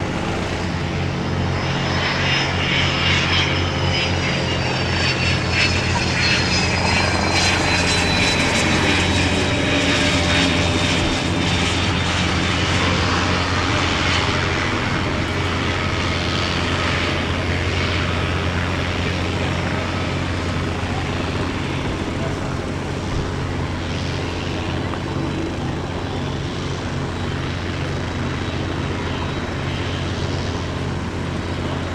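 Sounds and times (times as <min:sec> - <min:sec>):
jet engines whining: 0:00.0 - 0:31.9.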